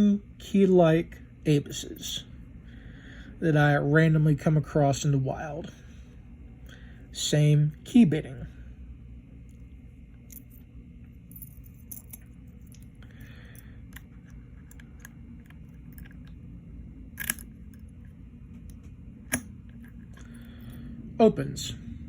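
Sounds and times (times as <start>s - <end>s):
keys and padlocks rattling: 10.3s - 10.6s, 11.2s - 16.3s, 17.2s - 18.0s
sharp padlock clicks: 17.2s - 17.9s, 19.3s - 20.2s.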